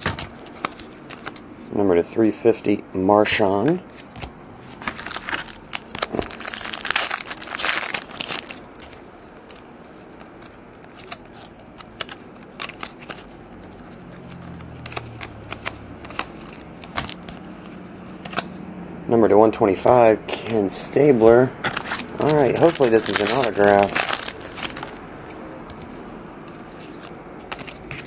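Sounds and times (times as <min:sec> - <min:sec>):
wrapper crinkling and tearing: 0:04.7 - 0:09.6, 0:10.8 - 0:17.7, 0:21.7 - 0:26.0
cards clicking as set down: 0:10.4 - 0:18.5, 0:26.5 - 0:28.0.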